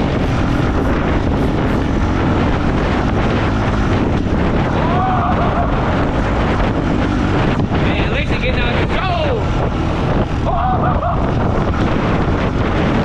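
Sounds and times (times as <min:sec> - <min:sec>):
atv engine running: 0:00.0 - 0:13.0
wind buffeting microphone: 0:00.0 - 0:13.0
person yelling: 0:04.8 - 0:05.8, 0:10.4 - 0:11.2.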